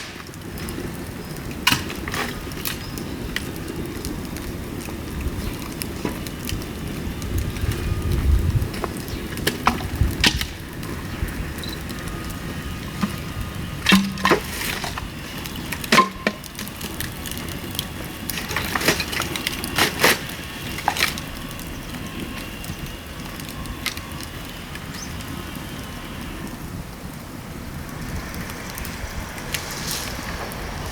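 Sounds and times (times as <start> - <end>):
dry bamboo cracking: 0.0 - 26.6, 27.8 - 30.9.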